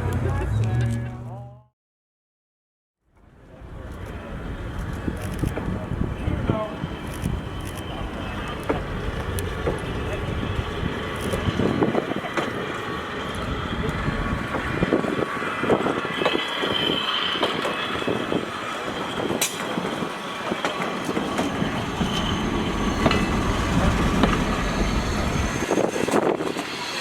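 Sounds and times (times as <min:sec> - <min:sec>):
wheels clacking over rail joints: 0:08.6 - 0:27.0.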